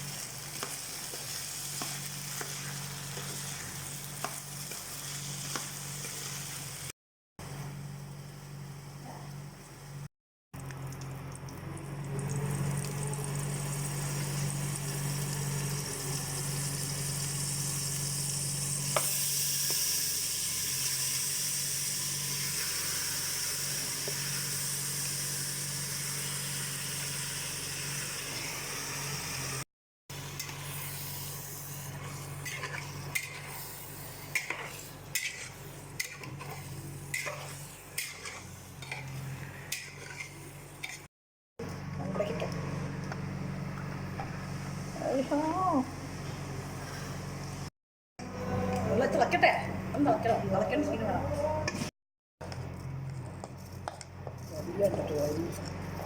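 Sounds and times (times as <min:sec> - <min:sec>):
food sizzling in oil: 0:00.0 - 0:06.9, 0:12.2 - 0:41.1
spoon scraping a pan: 0:32.0 - 0:41.1.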